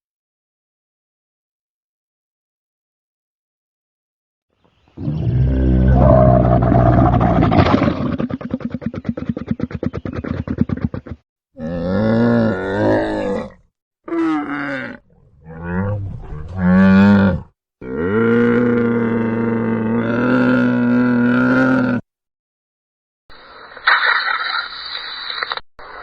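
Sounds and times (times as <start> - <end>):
camel calling: 14.1 - 19.1.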